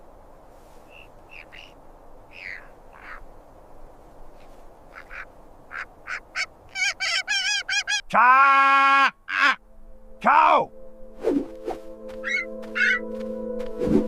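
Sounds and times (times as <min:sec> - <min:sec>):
bird squawking calls: 0:00.9 - 0:03.3, 0:04.4 - 0:08.1, 0:08.7 - 0:09.6, 0:12.2 - 0:13.1.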